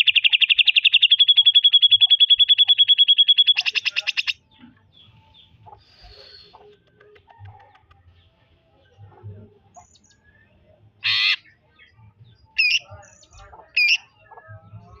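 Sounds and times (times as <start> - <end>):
bird singing and chirping: 0.0 - 15.0
harsh rasping bird call: 11.0 - 11.5.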